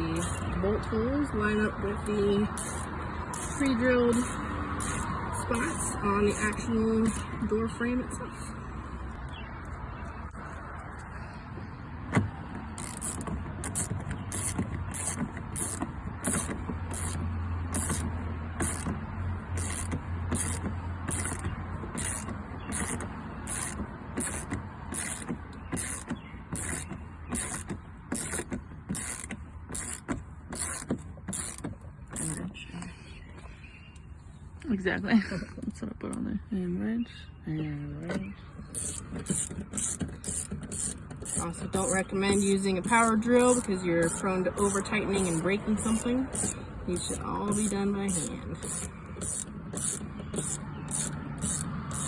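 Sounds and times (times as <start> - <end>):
ratchet wrench clicking: 2.5 - 7.4, 12.6 - 32.4, 38.7 - 52.0.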